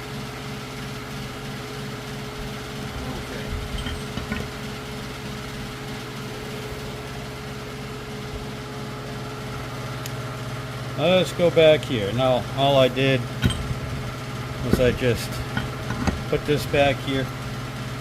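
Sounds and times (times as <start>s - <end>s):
machine hum: 0.0s - 18.0s.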